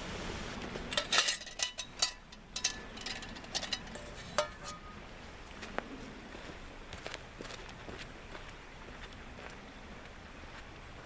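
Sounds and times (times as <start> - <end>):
metal cookware clinking and rattling: 0.9 - 5.0.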